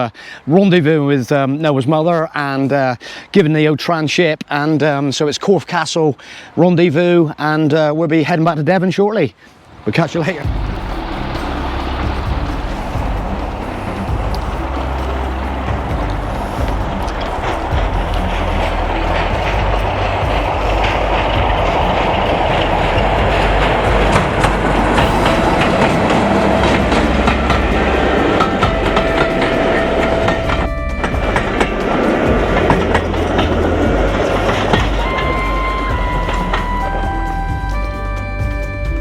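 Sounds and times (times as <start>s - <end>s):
diesel train rumbling: 9.3s - 39.0s
wheels clicking over rail joints: 9.4s - 39.0s.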